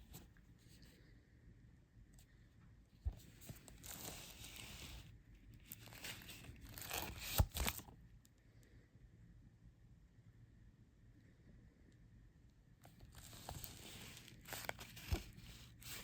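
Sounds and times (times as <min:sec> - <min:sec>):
plastic wrap tearing and crinkling: 0:05.7 - 0:07.9, 0:13.1 - 0:16.0.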